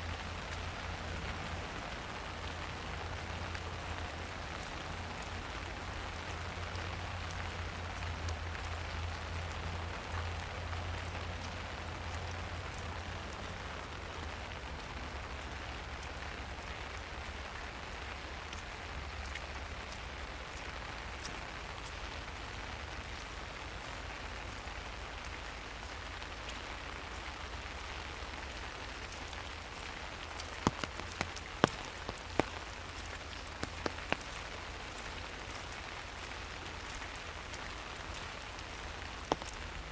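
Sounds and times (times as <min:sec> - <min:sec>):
rain on leaves: 0:00.0 - 0:39.9
sharp taps: 0:30.6 - 0:32.7, 0:33.4 - 0:34.4.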